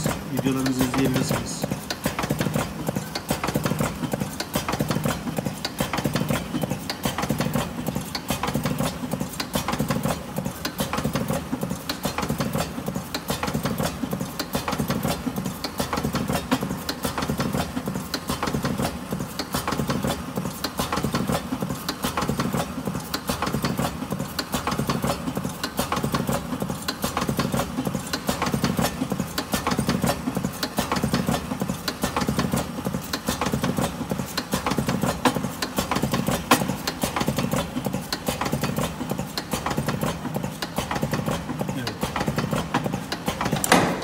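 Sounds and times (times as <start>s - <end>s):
machine clicking rhythmically: 0.0s - 44.0s.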